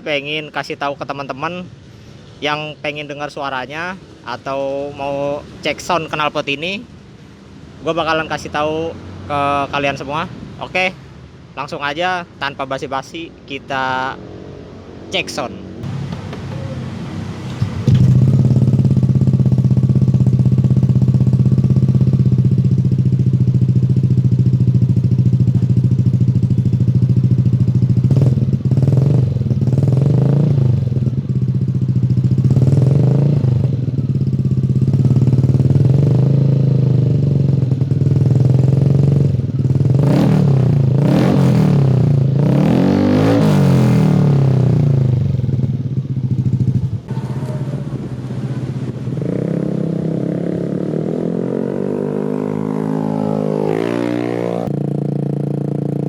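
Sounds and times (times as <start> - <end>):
scooter engine revving: 15.8 - 55.9
scooter engine idling: 17.5 - 29.9, 30.6 - 40.0, 44.3 - 49.2.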